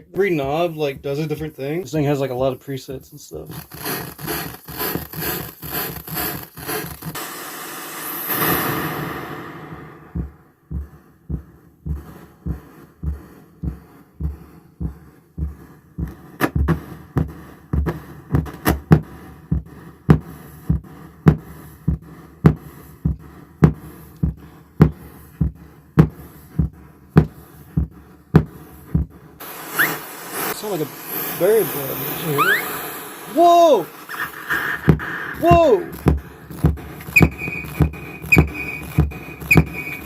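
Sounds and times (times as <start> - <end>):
sharp clicks: 3.5 - 7.2
low electronic feedback pulse: 37.1 - 40.0.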